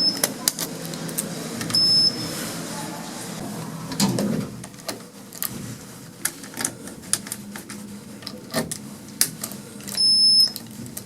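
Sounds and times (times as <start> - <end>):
murmur of voices: 0.0 - 4.1.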